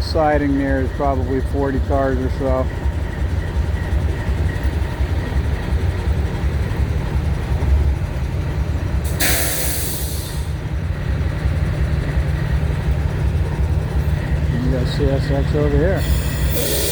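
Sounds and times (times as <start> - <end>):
freight train rumble: 0.0 - 16.9
air brake hiss: 9.1 - 10.6, 16.0 - 16.9.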